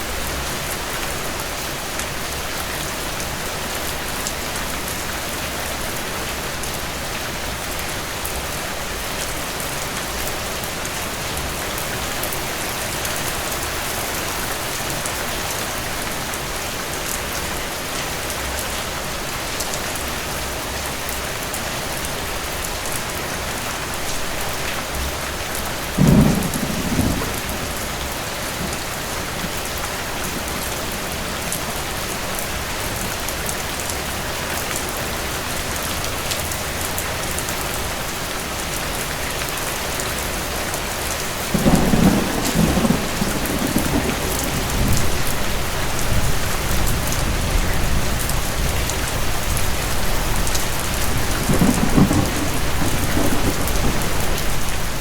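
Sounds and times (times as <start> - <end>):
steady rain falling: 0.0 - 55.0
low rolls of thunder: 25.9 - 30.8, 41.5 - 55.0.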